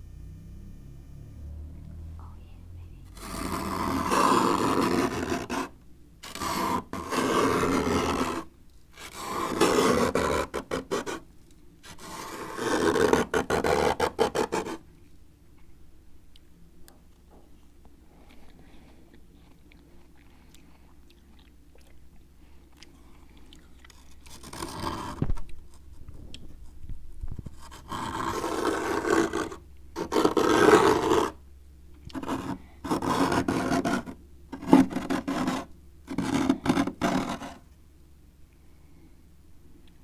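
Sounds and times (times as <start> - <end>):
spoon scraping frost: 32.1 - 37.6.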